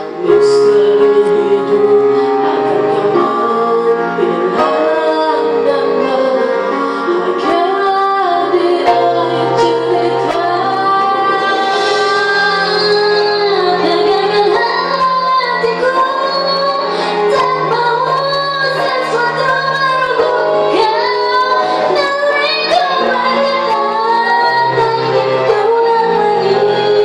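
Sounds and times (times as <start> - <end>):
musical accompaniment: 0.0 - 27.0
women singing: 0.0 - 27.0.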